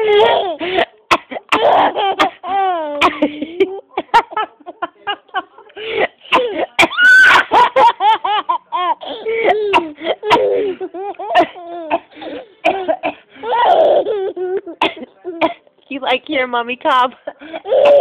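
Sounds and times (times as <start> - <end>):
baby laughing: 0.0 - 0.7, 1.6 - 4.8, 12.7 - 15.3
woman coughing: 0.1 - 4.5, 6.0 - 8.0, 9.4 - 14.1, 14.8 - 15.6.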